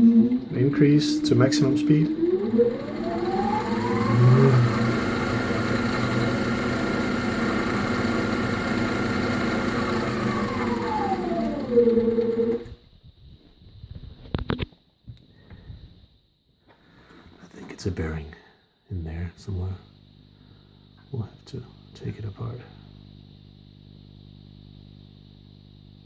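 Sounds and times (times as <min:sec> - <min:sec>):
lathe motor whining: 0:00.0 - 0:12.8.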